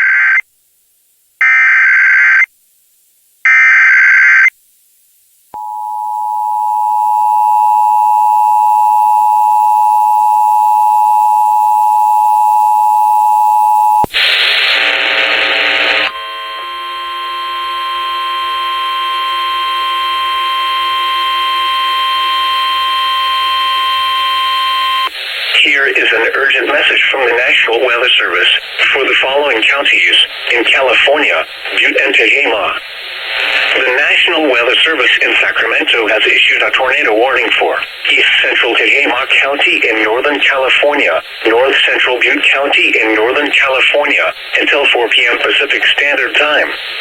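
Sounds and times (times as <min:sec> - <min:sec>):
harsh buzzy steady tone: 0:02.6 - 0:47.0
two-tone attention signal: 0:05.6 - 0:14.0, 0:16.1 - 0:25.1.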